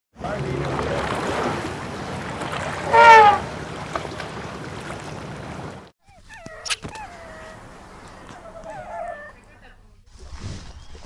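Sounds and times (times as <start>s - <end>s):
chirping calls: 0.2s - 5.8s
outdoor wind noise: 0.6s - 5.9s
animal crying: 1.4s - 5.8s.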